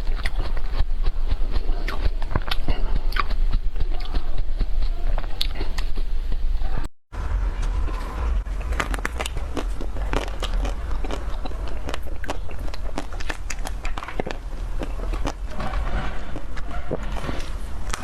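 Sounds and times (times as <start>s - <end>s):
steady low rumble: 0.0s - 18.0s
ice cream crunching bites: 8.5s - 15.5s.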